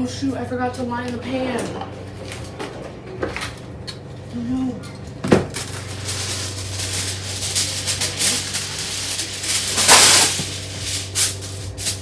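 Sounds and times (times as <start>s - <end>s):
pan liner crinkling: 5.5s - 12.0s.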